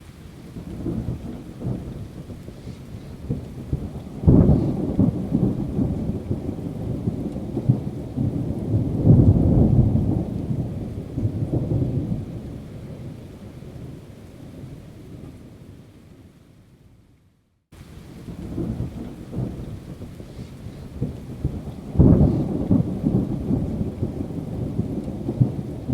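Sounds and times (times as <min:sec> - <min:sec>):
low thunder rumble: 0:00.4 - 0:14.0, 0:17.9 - 0:25.9
thunder clap: 0:00.6 - 0:12.3, 0:18.3 - 0:25.9.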